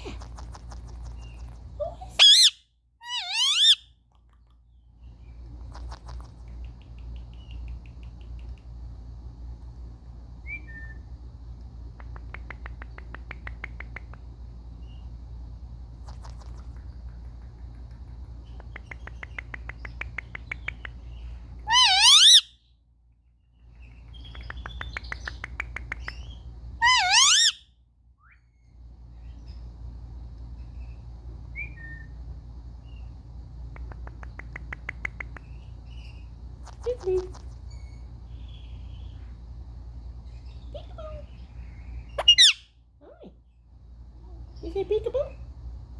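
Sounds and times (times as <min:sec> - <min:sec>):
parakeet clicking chatter: 0:00.2 - 0:02.5, 0:03.1 - 0:04.6, 0:05.6 - 0:08.9, 0:11.8 - 0:14.4, 0:16.0 - 0:22.5, 0:24.0 - 0:27.6, 0:33.7 - 0:35.7, 0:42.1 - 0:42.6
parakeet piercing call: 0:02.1 - 0:03.9, 0:21.7 - 0:22.6, 0:26.8 - 0:27.7, 0:42.1 - 0:42.8.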